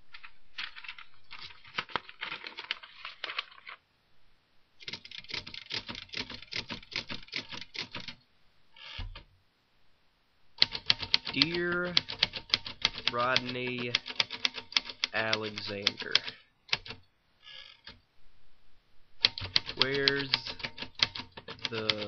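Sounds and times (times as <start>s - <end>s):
typewriter keys clacking: 0.1s - 3.6s, 4.8s - 8.2s, 10.6s - 17.0s, 19.2s - 22.0s.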